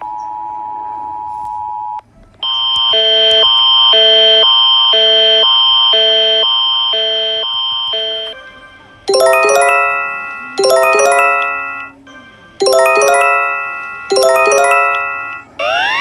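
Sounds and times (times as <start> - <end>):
loud electronic alarm: 9.1 - 12.0, 12.6 - 16.0
two-tone attention signal: 9.1 - 12.0, 12.6 - 15.6.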